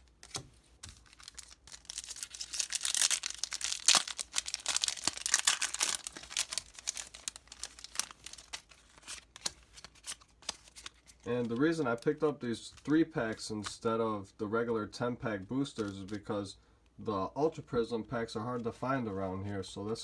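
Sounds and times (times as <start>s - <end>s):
foil wrapper tearing and crinkling: 0.2s - 11.2s.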